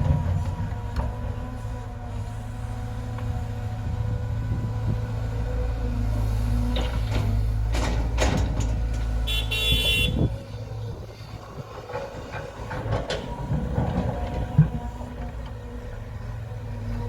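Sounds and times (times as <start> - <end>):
knocks and clanks: 6.7 - 9.3, 11.4 - 15.6.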